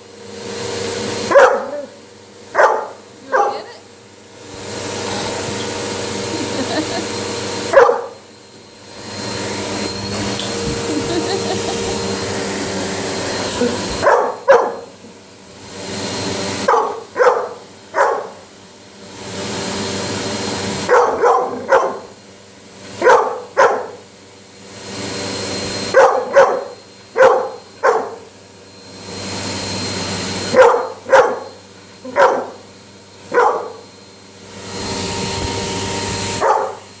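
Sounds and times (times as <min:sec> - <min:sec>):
vacuum cleaner running: 0:00.0 - 0:37.0
dog barking: 0:01.3 - 0:03.9, 0:07.7 - 0:08.2, 0:13.8 - 0:15.0, 0:16.6 - 0:18.5, 0:20.8 - 0:22.2, 0:23.0 - 0:24.1, 0:25.9 - 0:28.3, 0:30.5 - 0:32.7, 0:33.3 - 0:33.8, 0:36.4 - 0:36.9.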